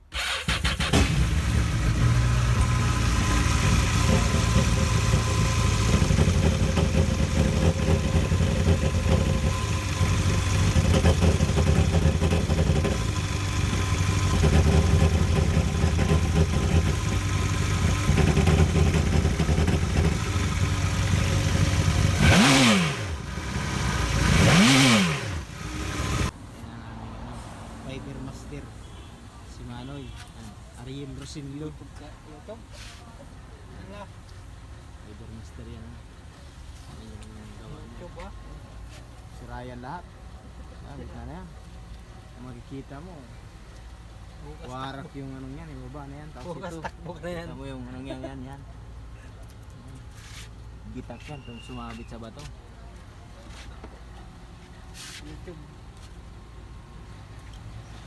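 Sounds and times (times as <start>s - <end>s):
boat engine running and revving: 1.0s - 26.3s.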